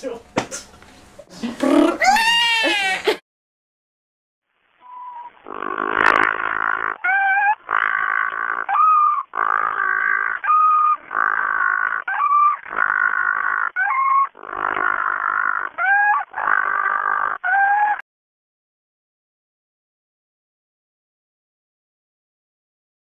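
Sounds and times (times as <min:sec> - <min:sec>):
penguin braying: 0:04.9 - 0:18.0.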